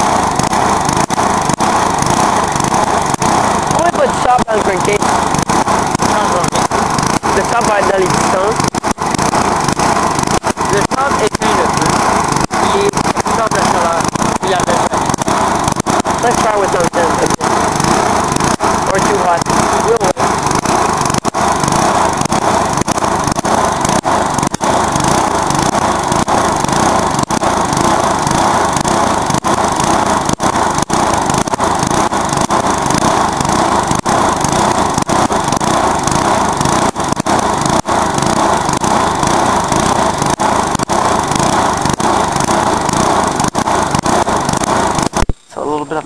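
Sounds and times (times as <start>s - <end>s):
lawnmower engine running loud: 0.0s - 46.0s.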